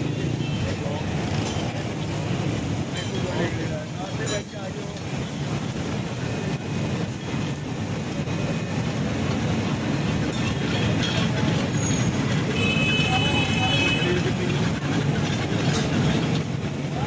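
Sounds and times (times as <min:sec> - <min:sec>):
noisy background din: 0:00.0 - 0:17.0.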